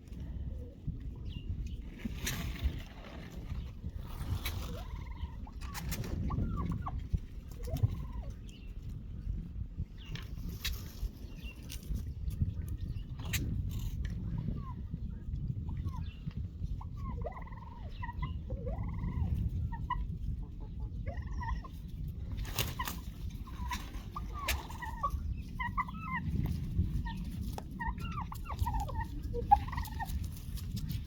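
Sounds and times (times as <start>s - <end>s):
poultry calling: 16.8s - 21.9s, 22.6s - 30.5s.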